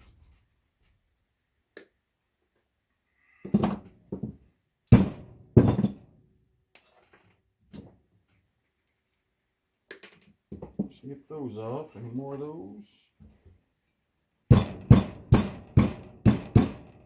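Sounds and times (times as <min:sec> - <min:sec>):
knocks and clatters of metal parts: 0:03.5 - 0:06.1, 0:14.5 - 0:17.0.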